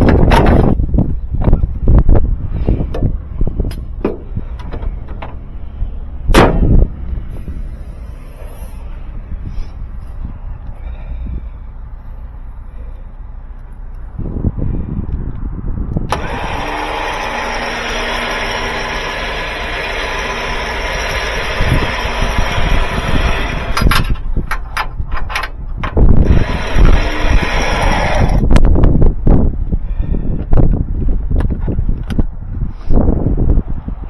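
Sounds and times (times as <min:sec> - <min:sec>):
car engine cranking: 0:03.0 - 0:14.4, 0:16.0 - 0:28.7.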